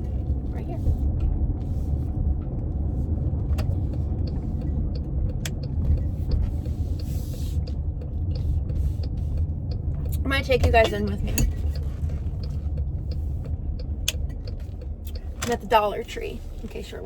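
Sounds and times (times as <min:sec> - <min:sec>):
car road and engine rumble: 0:00.0 - 0:17.0
light regular ticks: 0:03.6 - 0:15.6.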